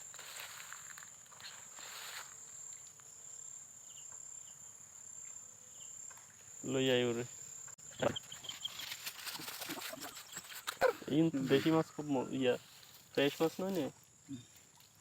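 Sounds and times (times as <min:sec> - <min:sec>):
soft scuffing: 0:00.0 - 0:02.4
insects droning: 0:00.0 - 0:15.0
faint chirps: 0:03.8 - 0:15.0.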